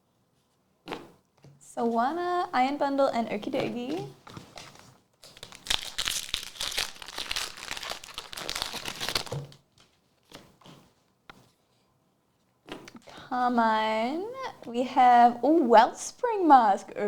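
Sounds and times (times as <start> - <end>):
foil wrapper crinkling and tearing: 4.5 - 9.7.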